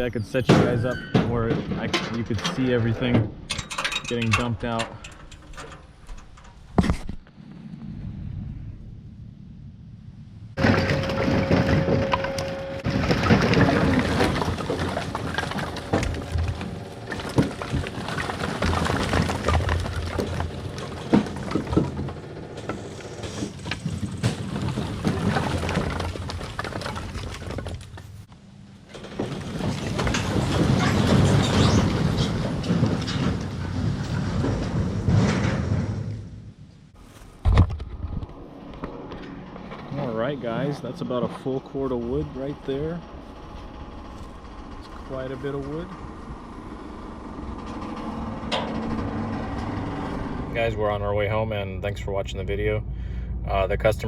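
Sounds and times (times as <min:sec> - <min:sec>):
firewood logs clattering: 0:00.0 - 0:07.2, 0:10.6 - 0:39.9
engine running: 0:04.2 - 0:25.1, 0:37.9 - 0:54.0.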